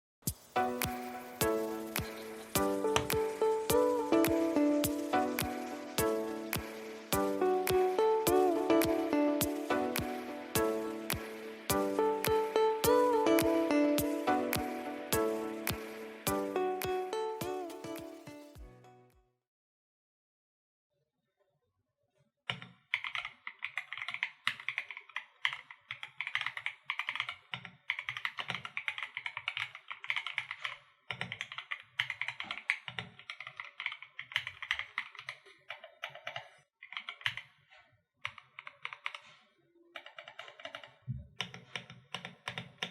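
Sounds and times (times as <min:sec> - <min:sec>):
fast typing on mechanical keyboard: 0:01.4 - 0:15.9, 0:22.5 - 0:37.6, 0:38.2 - 0:42.9.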